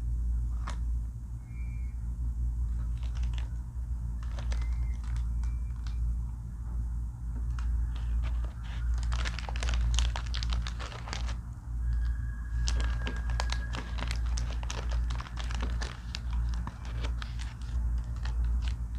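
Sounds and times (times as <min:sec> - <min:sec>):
steady low hum: 0:00.0 - 0:18.9
plastic wrapper crinkling: 0:02.8 - 0:03.6, 0:04.2 - 0:06.0, 0:07.5 - 0:18.9.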